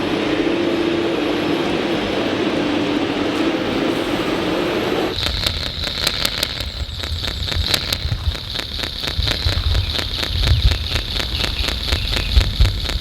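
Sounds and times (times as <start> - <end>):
steady high whine: 0.0 - 13.0
sharp clicks: 5.1 - 13.0
small electric motors running: 5.1 - 13.0.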